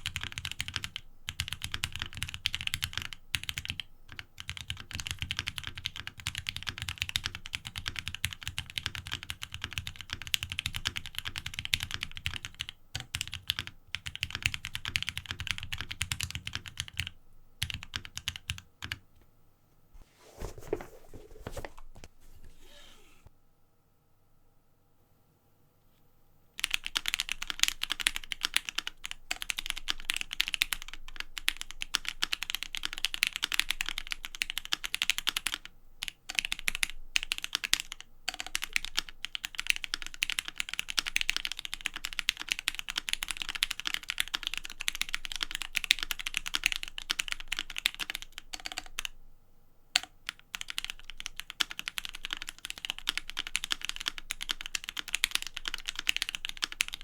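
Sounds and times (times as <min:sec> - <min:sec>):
mechanical keyboard typing: 0:00.0 - 0:19.0, 0:26.6 - 0:49.2, 0:50.0 - 0:57.0.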